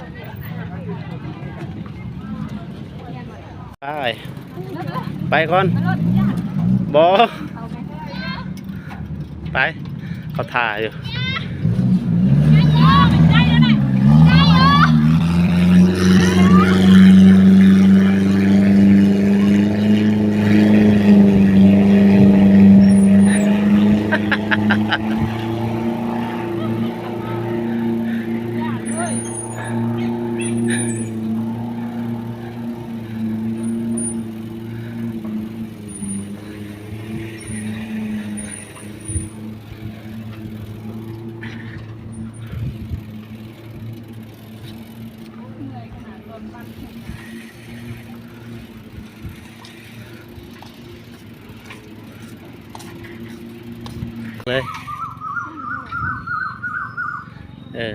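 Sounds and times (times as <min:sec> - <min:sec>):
engine running steadily: 0:00.0 - 0:55.0
road and wind noise: 0:00.0 - 0:57.9.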